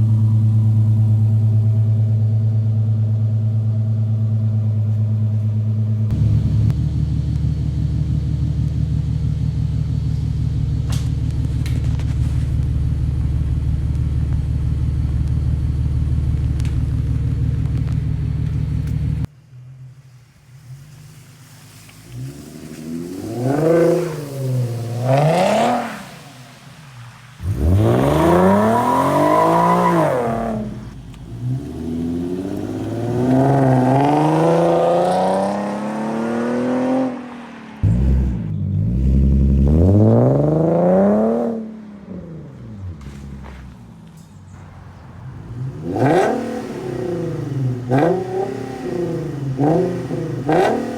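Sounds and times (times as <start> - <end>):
car exhaust drone: 0.0 - 50.9
engine revving: 21.7 - 43.7, 45.2 - 50.9.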